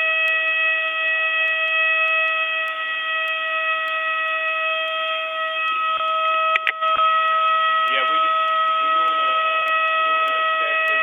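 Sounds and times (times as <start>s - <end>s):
electronic alarm tone: 0.0s - 11.0s.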